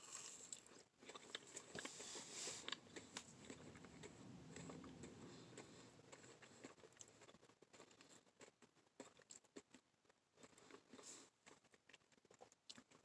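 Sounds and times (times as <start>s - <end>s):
chewing marshmallow: 0.0s - 13.0s.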